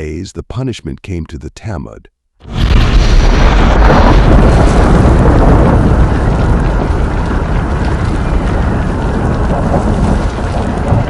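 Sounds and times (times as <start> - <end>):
deep rumble: 2.4 - 11.0
hiss like heavy rain: 2.6 - 11.0.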